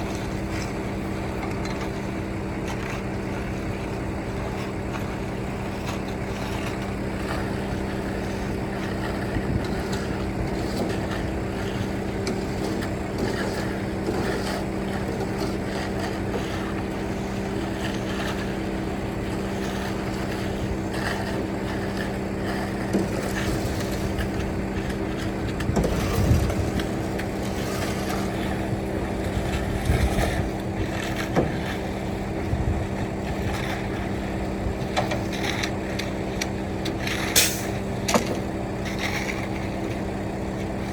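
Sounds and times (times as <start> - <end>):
engine running steadily: 0.0 - 40.9
wind on microphone: 25.6 - 27.1, 32.4 - 32.9.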